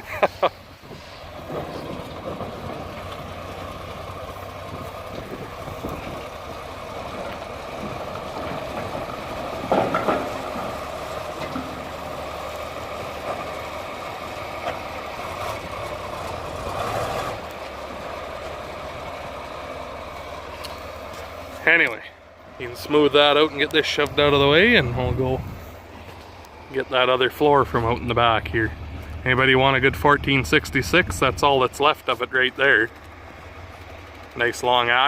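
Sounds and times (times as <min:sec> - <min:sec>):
diesel engine of earthmoving machine: 0:00.0 - 0:35.0.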